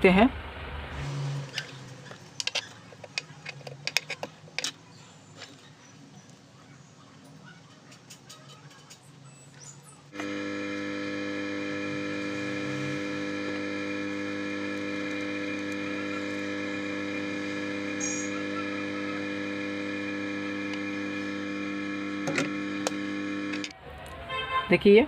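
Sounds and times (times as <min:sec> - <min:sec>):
steady machine whine: 0:10.1 - 0:23.7.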